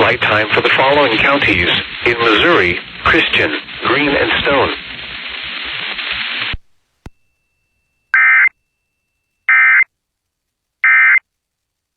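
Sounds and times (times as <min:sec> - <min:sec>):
radio hiss: 0:00.0 - 0:07.1.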